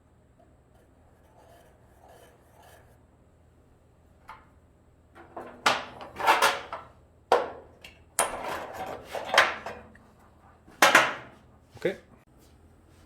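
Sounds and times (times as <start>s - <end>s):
tools clattering on a workbench: 5.2s - 10.0s, 10.7s - 11.4s.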